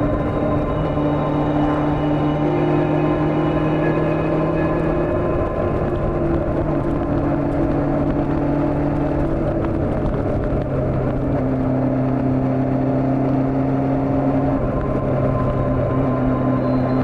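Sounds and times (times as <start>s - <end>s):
motorcycle engine cruising: 0.0s - 17.0s
rushing wind noise: 0.0s - 17.0s.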